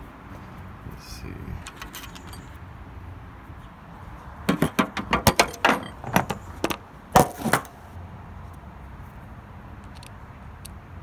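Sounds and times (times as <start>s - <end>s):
metal hand tools clicking and clattering: 1.6s - 2.6s, 4.5s - 7.8s.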